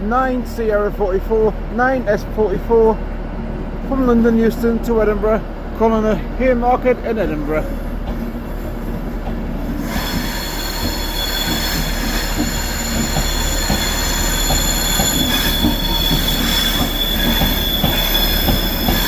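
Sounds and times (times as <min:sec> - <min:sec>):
train rumble: 0:00.0 - 0:19.0
high-pitched train wheel squeal: 0:09.7 - 0:19.0.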